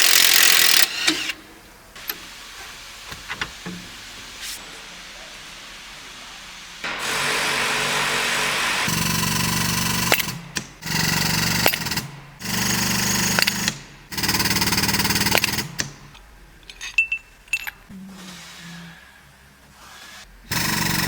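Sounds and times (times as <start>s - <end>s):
impact wrench hammering: 6.8s - 16.2s
sharp metallic clicks: 9.8s - 17.9s.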